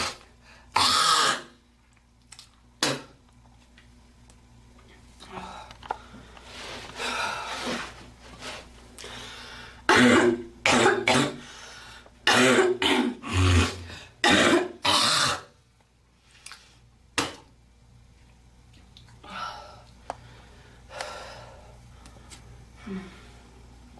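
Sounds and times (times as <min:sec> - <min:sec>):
girl coughing: 0:09.9 - 0:11.4, 0:12.3 - 0:13.2, 0:14.2 - 0:15.4.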